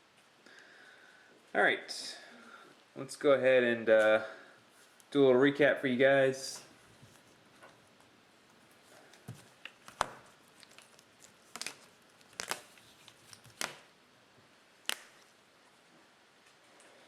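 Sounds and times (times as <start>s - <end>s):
cards tapping and rustling: 9.1s - 13.9s.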